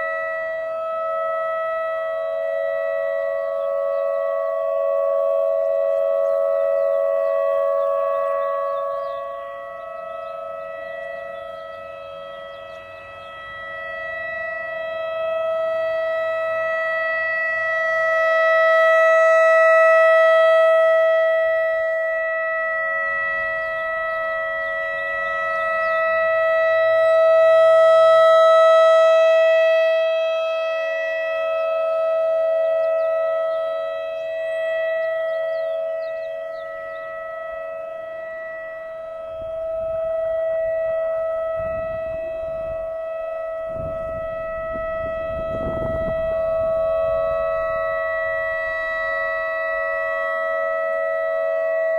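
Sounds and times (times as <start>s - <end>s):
warning siren steady tone: 0.0s - 51.9s.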